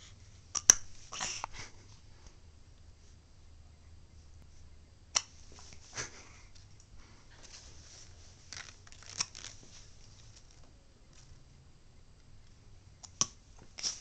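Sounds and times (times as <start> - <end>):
faint rustling: 5.4 - 11.5.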